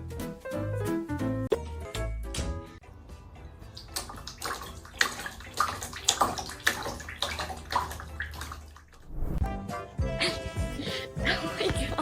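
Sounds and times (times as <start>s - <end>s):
water splashing and sloshing: 3.6s - 9.4s.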